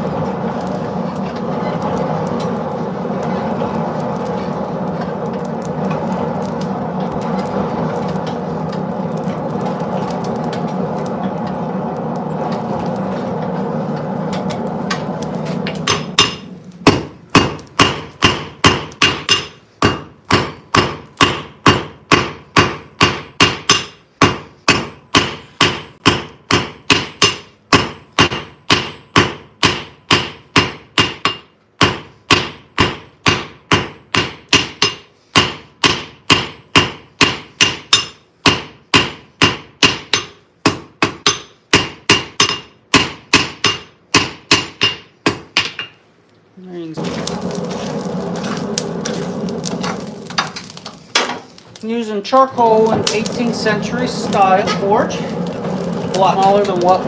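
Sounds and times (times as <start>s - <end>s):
hammer striking iron on anvil: 15.8s - 46.0s.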